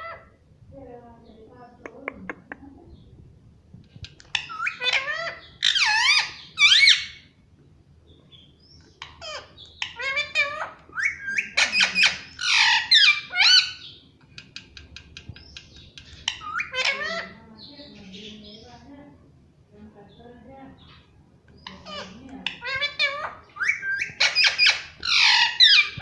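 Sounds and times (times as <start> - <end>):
parrot squawking calls: 0.0 - 0.4, 4.3 - 7.3, 9.0 - 14.0, 16.2 - 17.4, 21.6 - 26.0.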